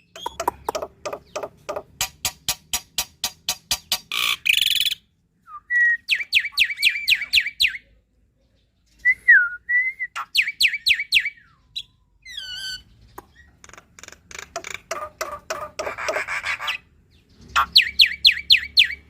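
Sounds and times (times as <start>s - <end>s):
bird harsh rasping call: 14.5s - 16.9s.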